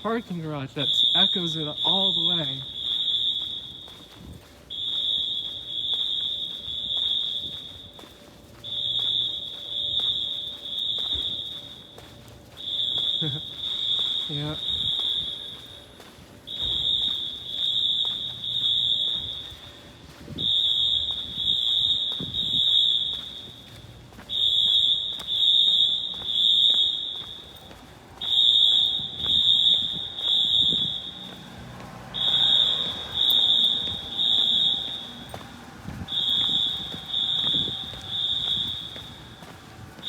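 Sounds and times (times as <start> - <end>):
fire alarm horns echoing: 0.0 - 40.0.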